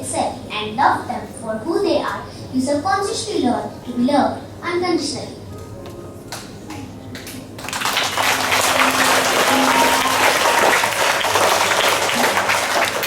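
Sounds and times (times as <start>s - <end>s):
faint background music: 0.0s - 13.0s
audience applause: 7.6s - 13.0s.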